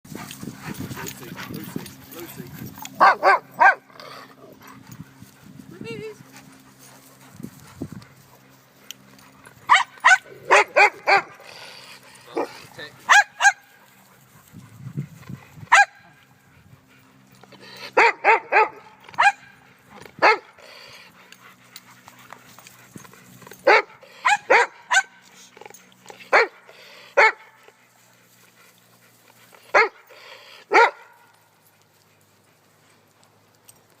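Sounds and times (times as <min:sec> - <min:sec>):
dogs barking: 0:00.3 - 0:04.9, 0:09.1 - 0:14.4, 0:15.7 - 0:16.3, 0:17.8 - 0:20.6, 0:23.5 - 0:25.3, 0:26.2 - 0:27.8, 0:29.6 - 0:31.3.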